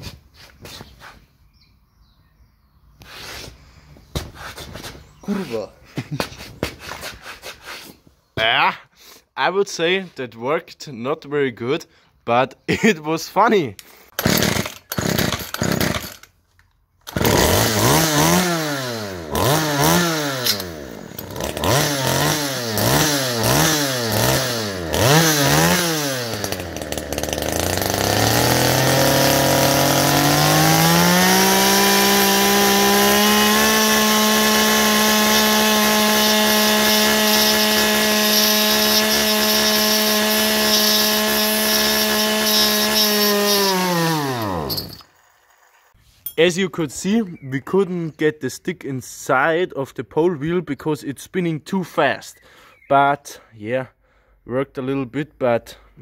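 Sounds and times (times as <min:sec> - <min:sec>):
chainsaw engine revving: 0:13.8 - 0:16.4, 0:17.0 - 0:46.0.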